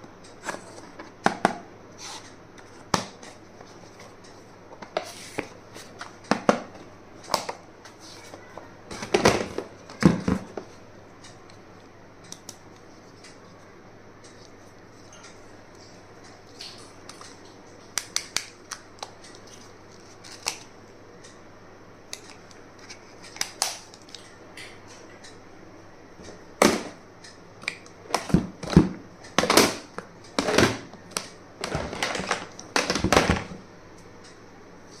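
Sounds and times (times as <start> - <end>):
knocks and rustling of packaging: 8.9 - 10.7, 31.6 - 33.6.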